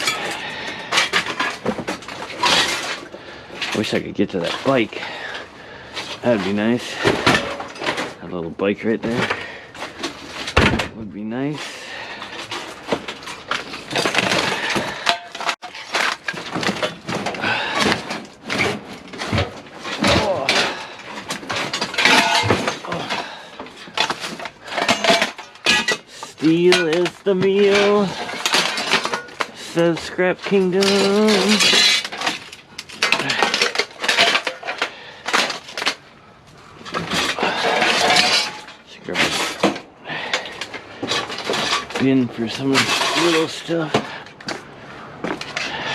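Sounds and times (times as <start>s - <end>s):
scrap clattering and scraping: 0.0s - 45.9s
scrap metal crashing onto pile: 18.7s - 29.4s, 37.0s - 40.4s.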